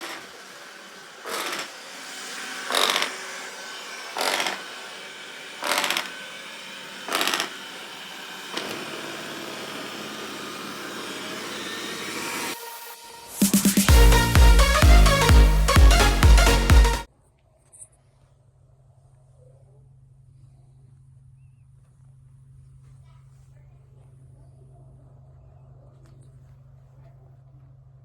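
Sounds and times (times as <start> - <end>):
robot vacuum motor humming: 0.0 - 1.9, 4.1 - 12.9.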